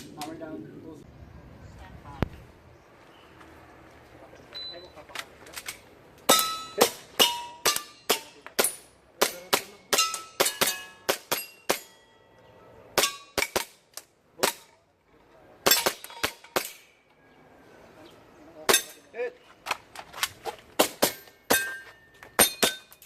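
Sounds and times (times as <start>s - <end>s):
metallic ring of steel targets: 6.3s - 13.7s, 15.6s - 17.0s, 18.7s - 19.2s, 20.9s - 23.0s.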